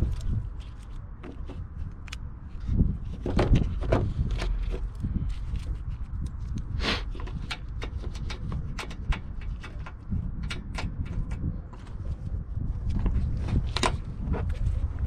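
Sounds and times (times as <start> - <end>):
low rumble: 0.0 - 15.0
tools clicking on car parts: 3.2 - 12.0
short scraping: 6.7 - 7.4.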